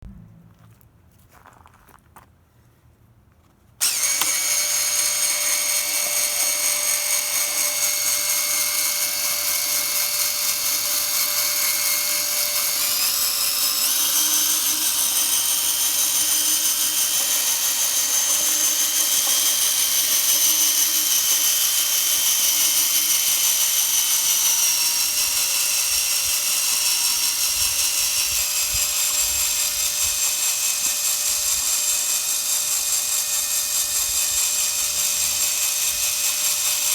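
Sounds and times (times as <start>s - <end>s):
electric drill whining: 3.8s - 36.9s.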